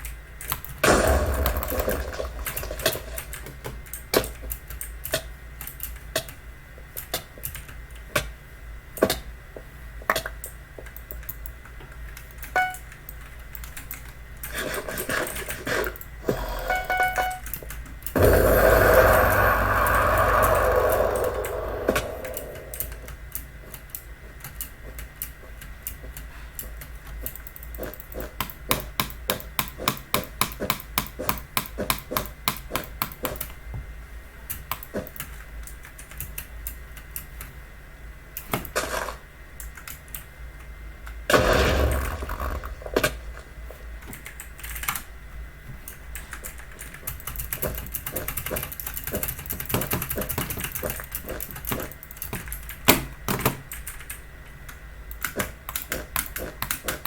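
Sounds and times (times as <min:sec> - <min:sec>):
loud thump: 0:00.8 - 0:02.8, 0:41.3 - 0:43.2.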